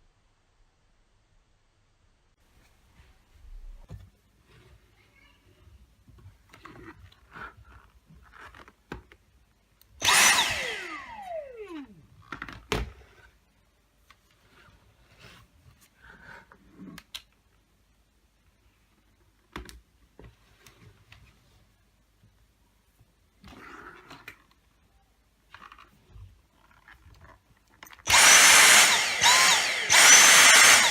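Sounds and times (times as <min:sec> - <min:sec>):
vacuum motor whining down: 0:10.0 - 0:12.0, 0:28.1 - 0:30.9.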